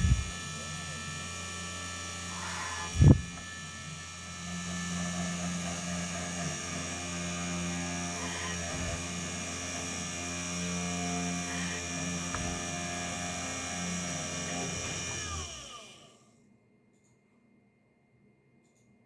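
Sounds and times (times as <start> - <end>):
spindle motor whine: 0.0 - 16.2.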